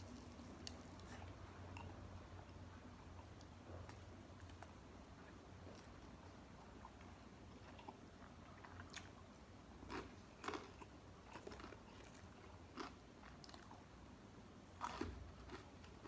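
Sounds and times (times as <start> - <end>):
person chewing crispy food: 5.6 - 13.8, 14.8 - 16.0.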